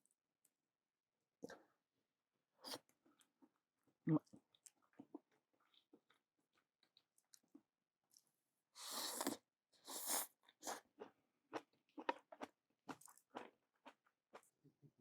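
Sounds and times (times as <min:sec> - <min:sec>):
chewing and crunching: 0:10.0 - 0:14.6.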